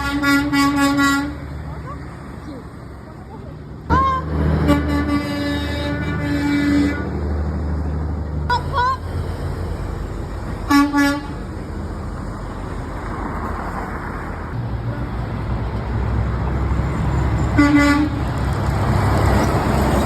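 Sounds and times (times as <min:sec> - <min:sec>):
truck horn honking: 0:00.0 - 0:01.5, 0:03.9 - 0:07.3, 0:08.5 - 0:09.1, 0:10.7 - 0:11.5, 0:17.5 - 0:18.4
heavy vehicle passing: 0:00.0 - 0:20.0
road traffic rumble: 0:00.0 - 0:20.0.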